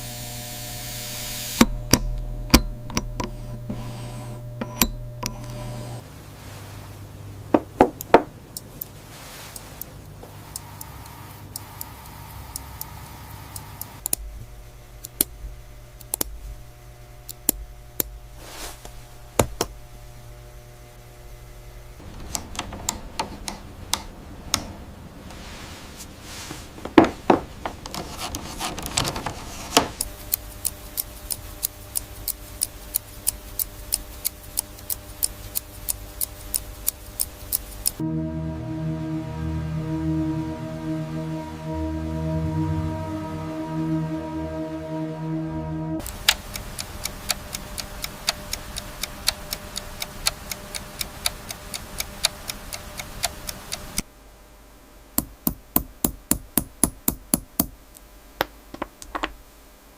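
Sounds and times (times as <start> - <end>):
steady machine hum: 0.0 - 59.9
hand tools clicking and tapping: 1.6 - 3.7, 4.6 - 6.0, 30.0 - 38.0, 55.2 - 57.8.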